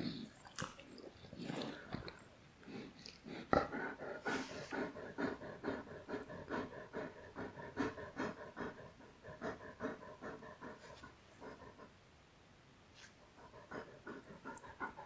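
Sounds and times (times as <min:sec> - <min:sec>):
dog panting: 0:01.5 - 0:11.9, 0:13.0 - 0:15.0.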